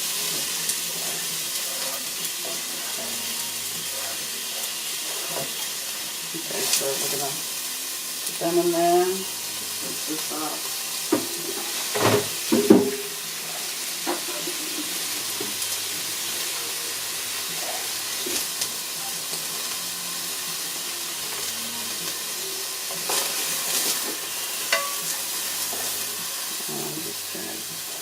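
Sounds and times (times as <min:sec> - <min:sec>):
onions sizzling in hot oil: 0:00.0 - 0:28.0.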